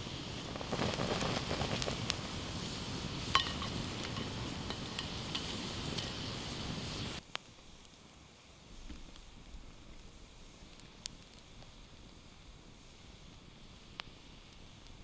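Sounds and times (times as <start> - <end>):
sizzling and crackling: 0.0 - 15.0
metal cookware clinking: 3.3 - 6.1.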